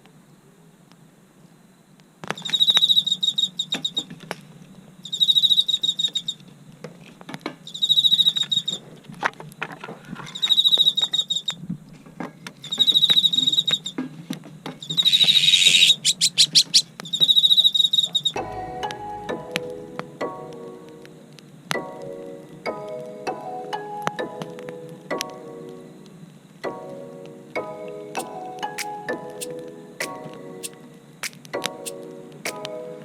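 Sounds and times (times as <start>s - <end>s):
insect trilling: 14.9s - 18.4s.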